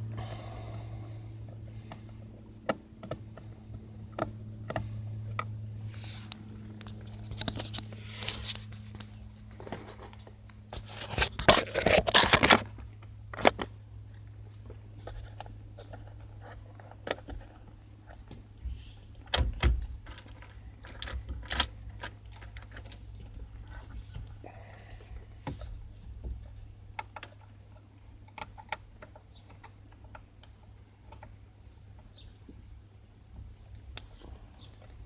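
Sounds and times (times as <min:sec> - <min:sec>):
low hum: 0:00.0 - 0:30.0.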